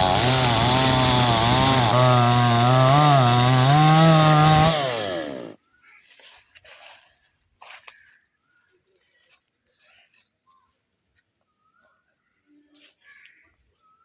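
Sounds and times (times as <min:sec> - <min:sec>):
chainsaw running: 0:00.0 - 0:05.6.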